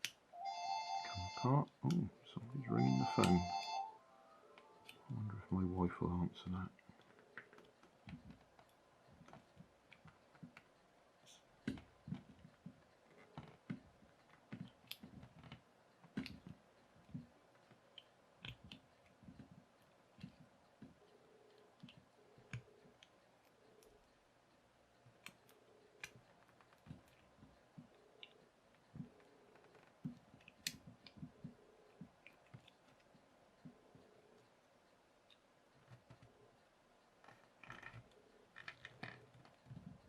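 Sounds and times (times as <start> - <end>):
plastic parts clicking and knocking: 37.2 - 40.0.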